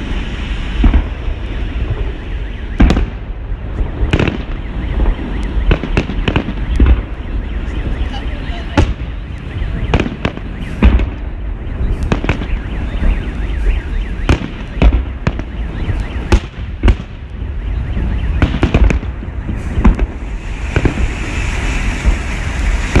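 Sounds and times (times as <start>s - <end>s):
hissing crackle of fireworks: 0.0s - 23.0s.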